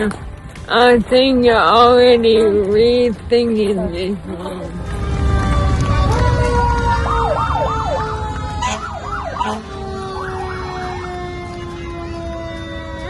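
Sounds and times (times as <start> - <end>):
siren winding down: 4.8 - 13.0
siren yelp: 4.8 - 13.0.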